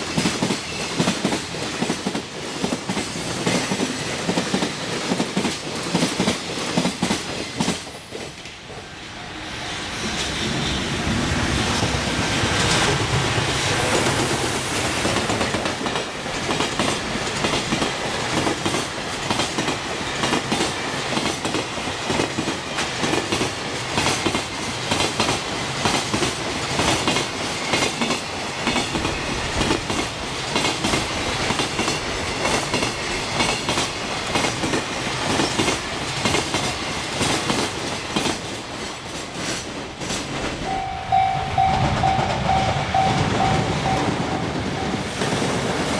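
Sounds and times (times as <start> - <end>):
train wheels clacking over rail joints: 15.0 - 45.9.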